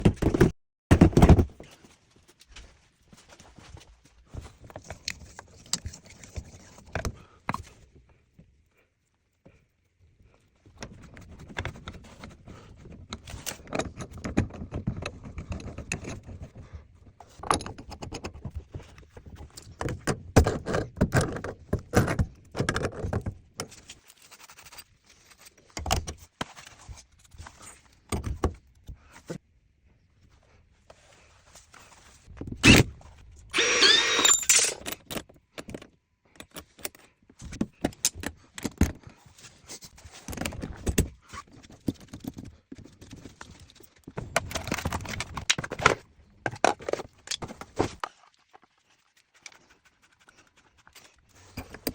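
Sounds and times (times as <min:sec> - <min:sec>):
metal tools clinking and rattling: 0:33.9 - 0:35.1.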